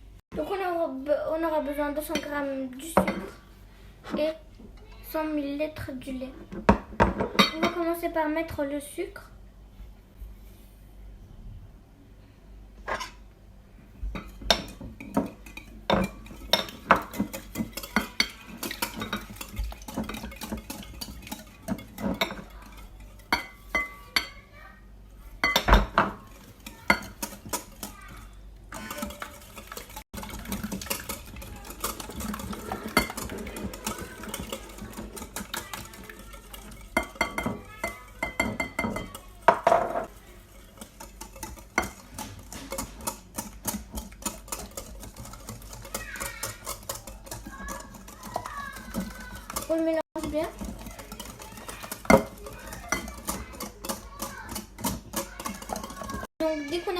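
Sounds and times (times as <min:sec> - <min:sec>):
whisk clinking against bowl: 0:14.2 - 0:24.5, 0:25.2 - 0:56.9.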